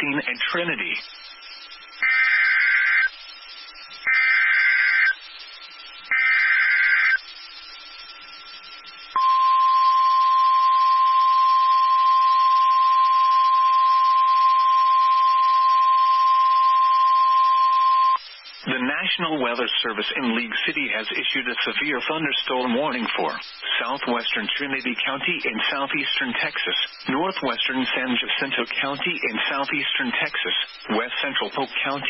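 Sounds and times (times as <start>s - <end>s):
digital data bursts: 0.0s - 9.6s
steady warning alarm tone: 0.8s - 18.6s.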